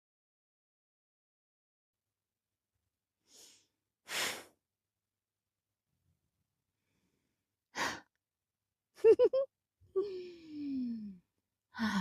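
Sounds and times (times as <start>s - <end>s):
person breathing: 10.0s - 11.2s, 11.8s - 12.0s.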